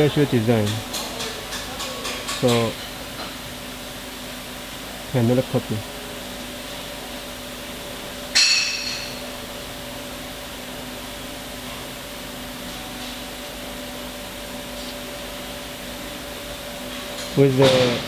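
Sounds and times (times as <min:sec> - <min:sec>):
metallic knock ringing: 0:08.4 - 0:09.2.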